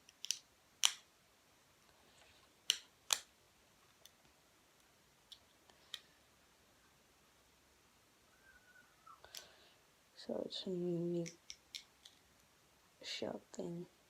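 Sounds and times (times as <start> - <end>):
clicks of small hard parts: 0.0 - 1.0.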